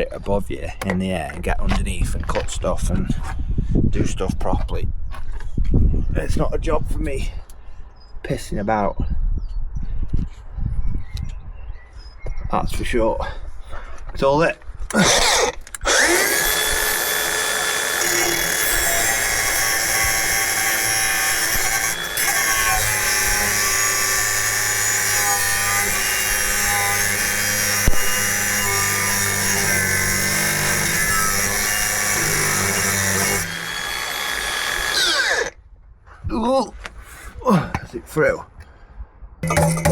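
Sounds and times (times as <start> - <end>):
angle grinder cutting metal pipe: 14.9 - 35.6, 39.4 - 39.9
rough grinding: 14.9 - 35.6, 39.4 - 39.9.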